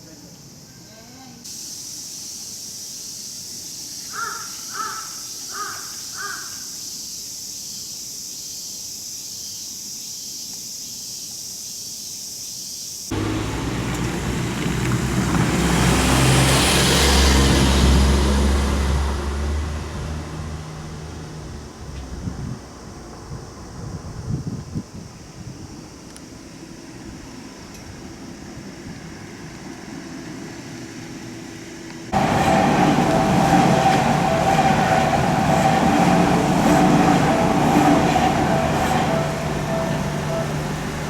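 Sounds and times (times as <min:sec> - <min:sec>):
cicadas droning: 0:00.0 - 0:41.0
crow cawing: 0:04.1 - 0:06.7
train passing with motor hum: 0:13.1 - 0:41.0.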